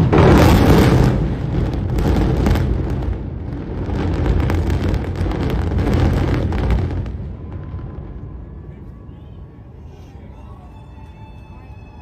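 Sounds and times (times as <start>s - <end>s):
rapid crackling of explosive charges: 0.0s - 9.5s
low rumble of collapsing towers: 0.0s - 10.6s.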